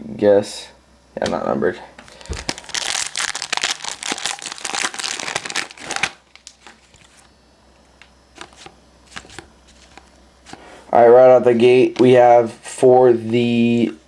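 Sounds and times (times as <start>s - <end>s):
plastic wrapper crinkling: 2.1s - 7.3s.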